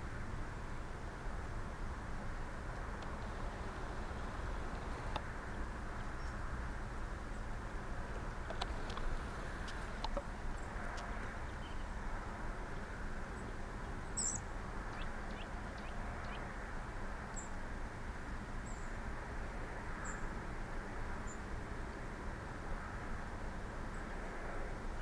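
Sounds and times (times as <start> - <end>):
outdoor rumble and hiss: 0.0 - 25.0
small bird chirping: 8.2 - 10.7.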